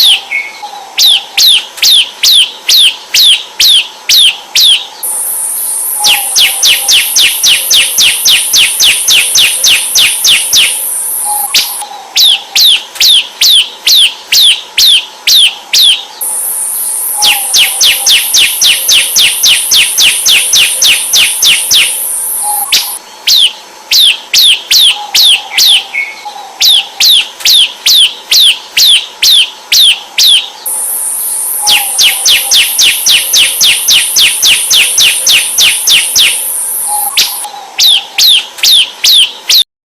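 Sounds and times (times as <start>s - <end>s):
bird chirping sharply: 0.0s - 25.8s, 26.6s - 39.6s
steady high hiss: 4.8s - 11.8s, 16.2s - 23.0s, 30.6s - 37.5s.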